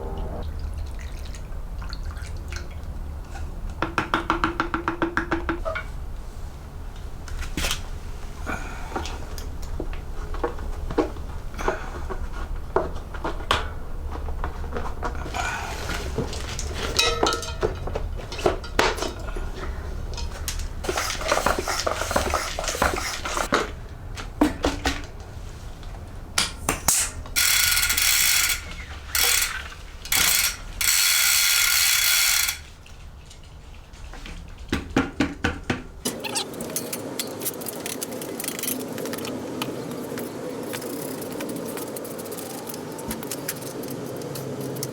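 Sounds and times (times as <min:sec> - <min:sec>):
clicks and knocks on bike wheel: 0:03.7 - 0:06.0, 0:08.5 - 0:25.3, 0:34.1 - 0:44.9.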